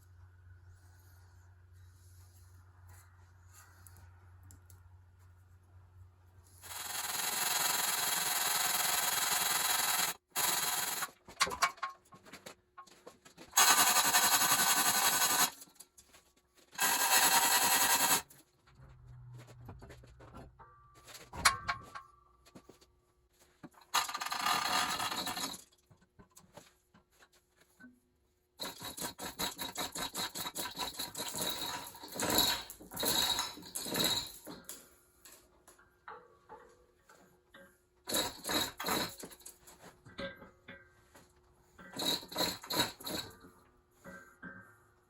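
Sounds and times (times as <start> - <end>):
metal parts and tools clicking: 23.8 - 26.2, 28.6 - 40.9, 41.8 - 44.6.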